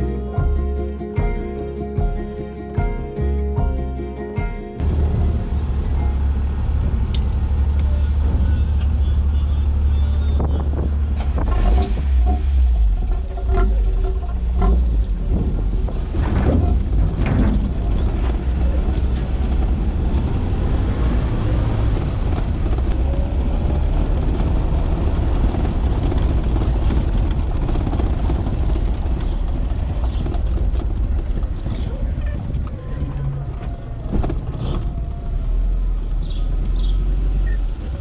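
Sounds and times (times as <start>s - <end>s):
sliding pitch tone: 0.0s - 7.4s
vehicle engine rumbling: 0.0s - 38.0s.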